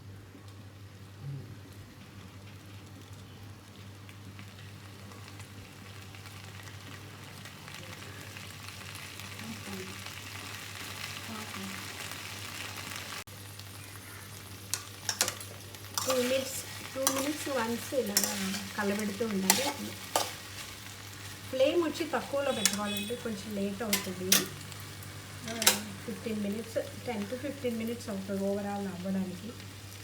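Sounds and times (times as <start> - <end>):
okra sizzling in oil: 0.4 - 30.0
spatula scraping a pan: 15.0 - 21.5, 22.2 - 23.2, 23.9 - 24.6, 25.4 - 26.0.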